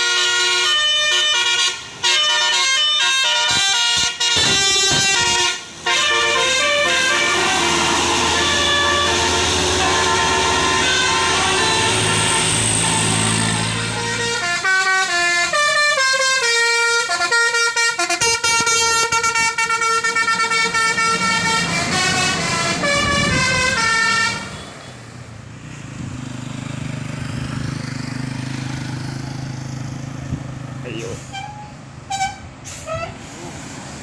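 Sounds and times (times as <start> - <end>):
bus musical horn: 0.0 - 25.0, 31.3 - 33.3.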